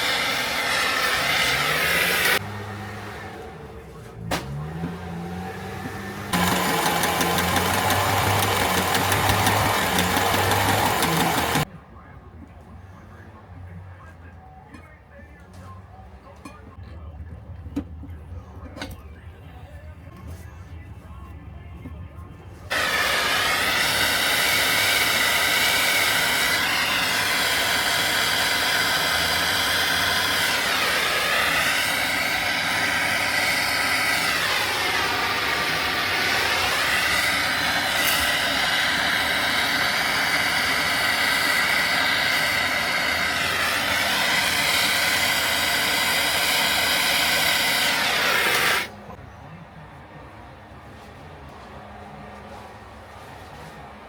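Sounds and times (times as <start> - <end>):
motor-driven machine running: 4.6 - 11.7, 22.7 - 49.0.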